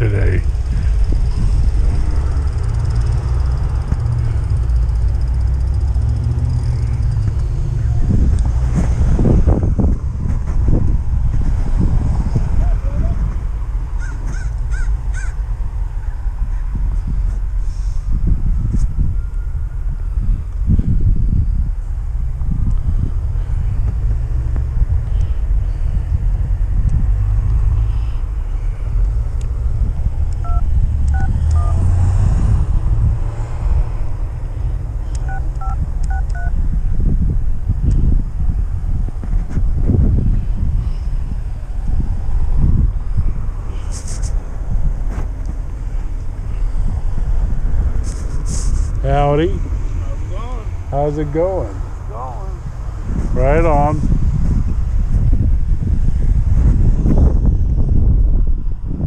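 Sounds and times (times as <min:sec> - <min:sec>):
wind buffeting microphone: 0:00.0 - 0:59.0
two-tone electronic beep: 0:30.4 - 0:31.8, 0:35.2 - 0:36.6.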